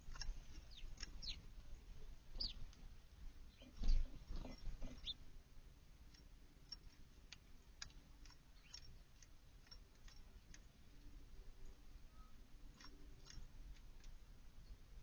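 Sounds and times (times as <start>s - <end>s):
bird chirp: 0.0s - 1.5s, 2.3s - 2.7s, 3.4s - 5.2s, 8.2s - 13.6s
small birds ticking: 0.0s - 5.3s, 5.9s - 15.0s.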